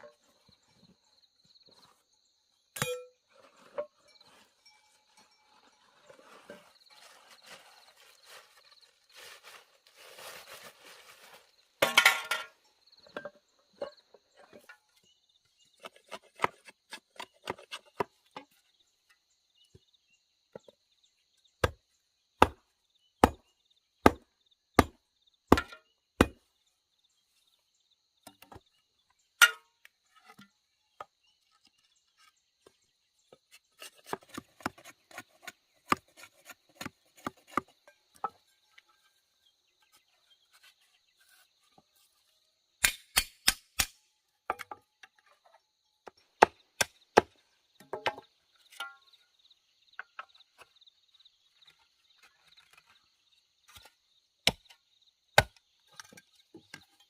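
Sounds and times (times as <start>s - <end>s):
blade chopping wood: 22.4s - 22.6s, 23.2s - 23.4s, 24.0s - 24.2s.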